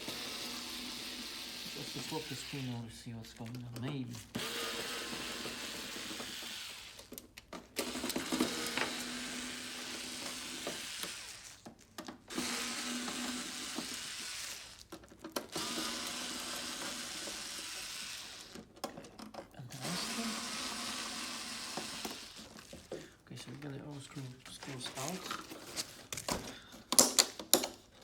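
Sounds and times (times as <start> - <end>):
electric screwdriver running: 0.0 - 2.8, 4.3 - 7.2, 7.8 - 11.7, 12.3 - 14.9, 15.5 - 18.7, 19.7 - 23.0.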